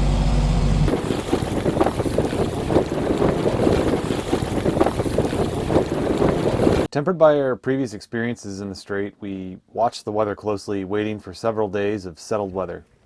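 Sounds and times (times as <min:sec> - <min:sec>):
low engine hum: 0:00.0 - 0:06.9
water splashing along hull: 0:00.9 - 0:06.9
wind buffeting microphone: 0:00.9 - 0:06.9.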